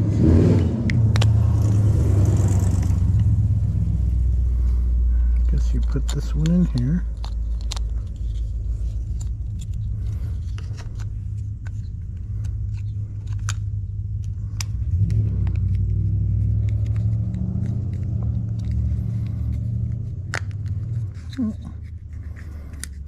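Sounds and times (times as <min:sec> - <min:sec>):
low rumbling hum: 0:00.0 - 0:23.0
plastic parts clicking: 0:05.3 - 0:23.0.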